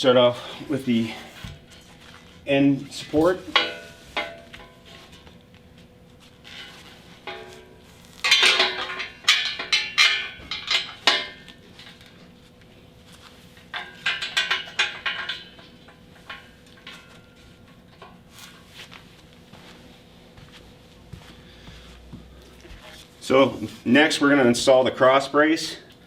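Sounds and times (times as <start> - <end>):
metal parts clanking and rattling: 3.0 - 5.3, 6.4 - 12.2, 13.6 - 18.7.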